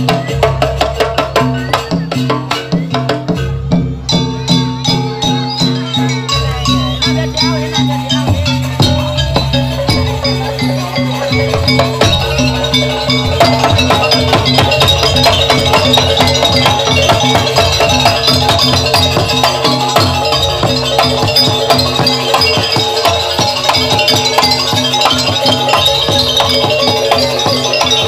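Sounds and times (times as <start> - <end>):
drums: 0.0 - 28.0
keyed percussion: 0.0 - 28.0.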